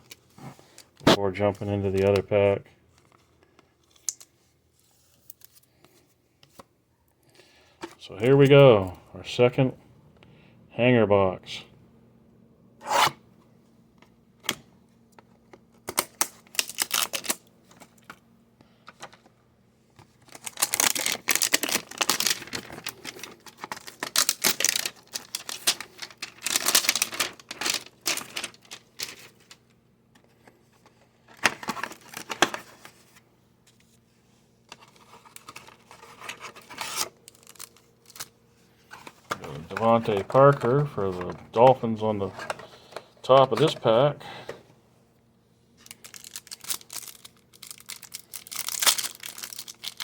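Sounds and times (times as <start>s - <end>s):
packaging tearing and crinkling: 15.9s - 17.4s, 20.2s - 29.6s, 31.3s - 32.7s, 34.9s - 38.3s, 45.8s - 50.0s.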